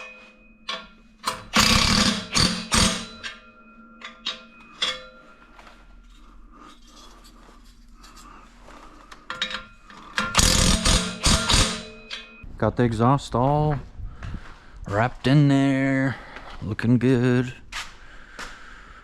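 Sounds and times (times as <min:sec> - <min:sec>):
sharp metal clicks: 0:00.6 - 0:03.4, 0:09.3 - 0:12.4
ratchet wrench ratcheting: 0:01.3 - 0:03.2, 0:10.2 - 0:11.9.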